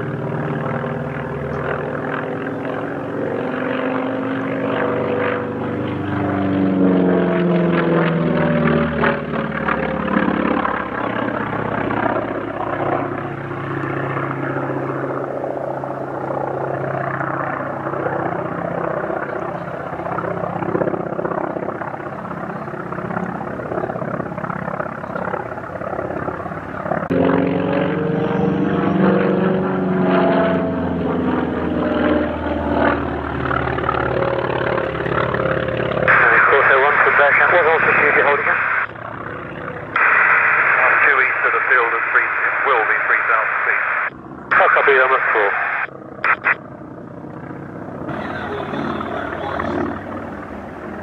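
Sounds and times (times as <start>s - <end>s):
propeller aircraft engine drone: 0.0s - 51.0s.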